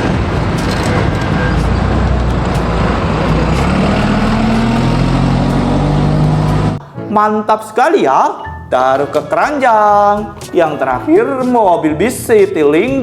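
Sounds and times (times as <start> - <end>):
bus engine running: 0.0 - 6.8
heavy road noise: 0.0 - 7.0.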